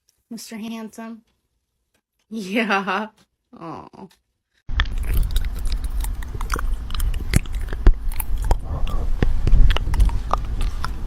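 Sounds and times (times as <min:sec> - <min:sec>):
cat chewing and crunching: 0:04.7 - 0:11.0
low rumble: 0:04.7 - 0:11.0.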